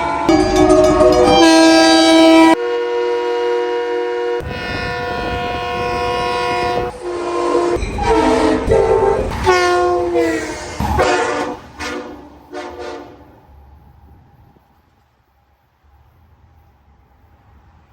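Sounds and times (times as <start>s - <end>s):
train horn: 0.0s - 13.4s.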